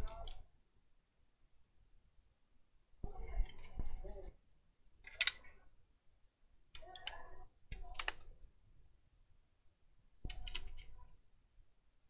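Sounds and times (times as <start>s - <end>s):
laptop parts clicking and clattering: 5.0s - 5.6s, 6.8s - 8.4s, 10.2s - 11.1s.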